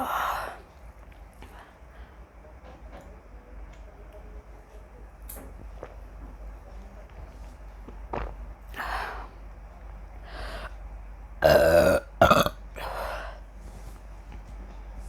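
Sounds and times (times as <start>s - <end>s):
woman burping: 11.4s - 13.0s
throat sounds: 11.4s - 13.2s.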